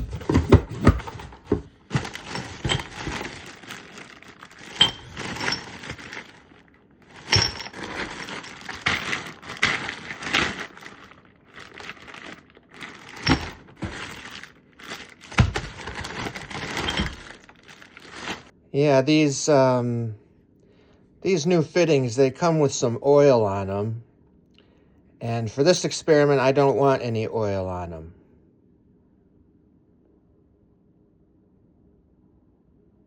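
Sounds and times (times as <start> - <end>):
metal fittings clinking: 0.0 - 18.4
rustling and crinkling: 0.0 - 18.5.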